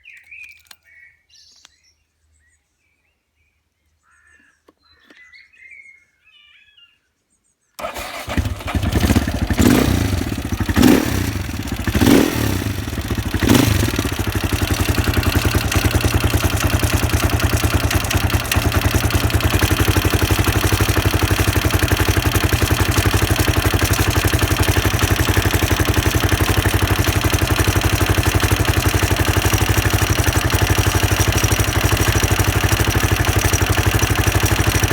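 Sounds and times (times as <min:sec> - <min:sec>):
faint bird chirps: 0:00.0 - 0:07.8
motorcycle engine revving and idling: 0:07.8 - 0:34.9.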